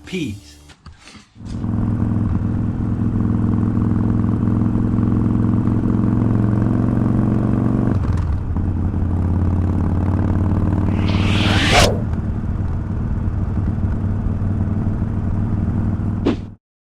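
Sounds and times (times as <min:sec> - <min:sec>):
rush of noise: 0:10.8 - 0:12.2.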